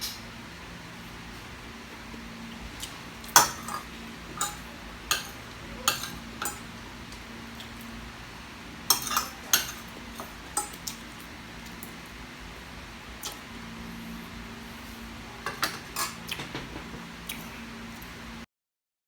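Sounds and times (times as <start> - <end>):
metal utensil clinking on cookware: 3.3 - 6.7, 8.9 - 10.8, 15.4 - 16.2.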